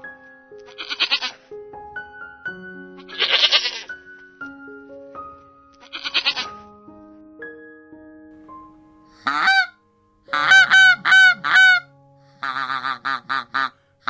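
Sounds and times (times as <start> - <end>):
soft background music: 0.0 - 14.0
goose honking: 9.2 - 9.7, 10.3 - 11.8, 12.4 - 13.7.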